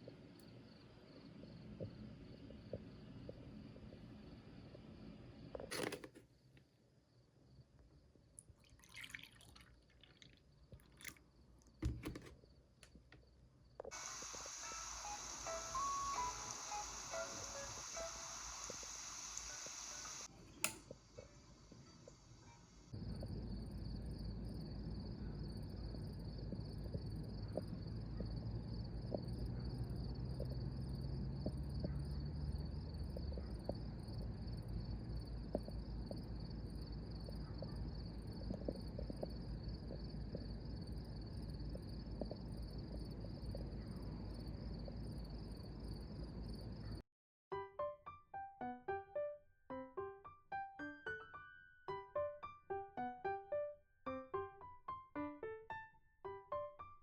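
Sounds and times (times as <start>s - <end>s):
insects chirping high trill: 13.9s - 20.3s
music: 14.0s - 19.6s, 47.5s - 57.0s
low background rumble: 23.0s - 47.0s.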